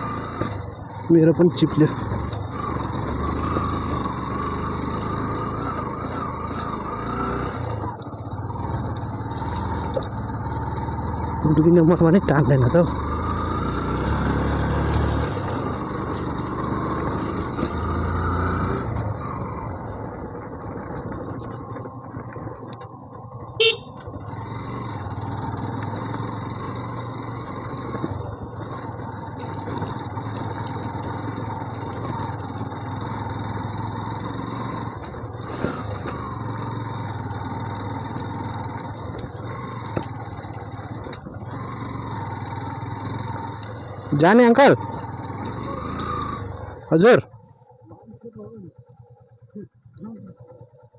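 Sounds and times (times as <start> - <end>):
motorcycle engine straining uphill: 0.0 - 50.9
short horn beep: 23.6 - 24.0.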